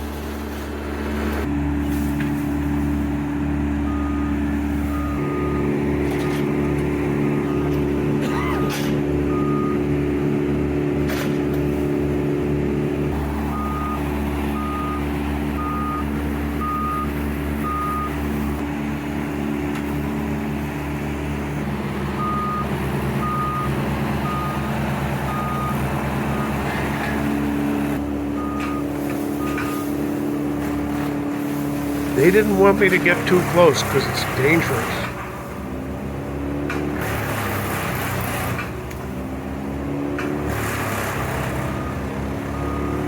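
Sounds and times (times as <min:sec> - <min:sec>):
heavy engine running: 0:00.0 - 0:43.0
reversing alarm beeping: 0:03.8 - 0:06.4, 0:07.4 - 0:10.0, 0:13.3 - 0:18.2, 0:22.2 - 0:26.6, 0:28.3 - 0:30.0, 0:41.8 - 0:43.0.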